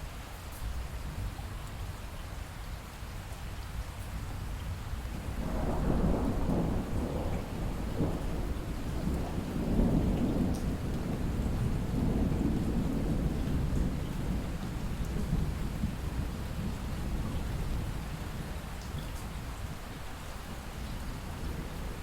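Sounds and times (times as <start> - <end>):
steady rain falling: 0.0 - 22.0
thunder rumbling: 5.2 - 18.4.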